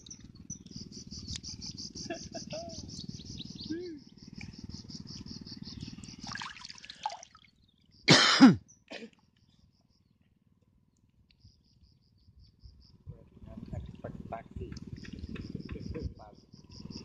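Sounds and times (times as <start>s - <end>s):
crickets chirping: 0.0s - 10.2s, 11.2s - 17.0s
person coughing: 8.1s - 9.1s
low outdoor rumble: 12.5s - 17.0s.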